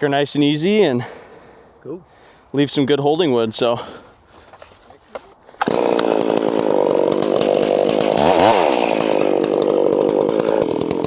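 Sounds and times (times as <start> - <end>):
chainsaw cutting at high revs: 5.6 - 11.0.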